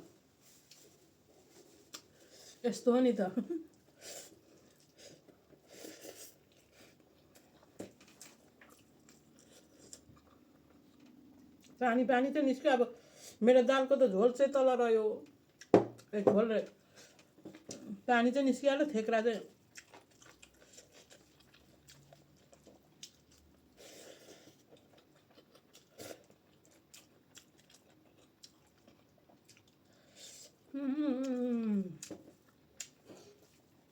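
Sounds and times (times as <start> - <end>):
quiet chewing: 0.4 - 2.6, 3.7 - 11.8, 19.7 - 33.9.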